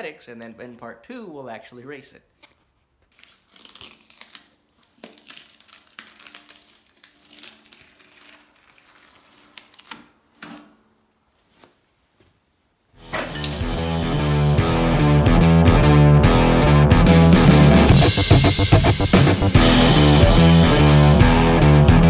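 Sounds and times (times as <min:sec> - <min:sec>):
crinkling and rustling: 0:02.3 - 0:10.7, 0:11.3 - 0:12.5
sharp tearing: 0:03.1 - 0:10.7
rock music with guitar: 0:13.0 - 0:22.0.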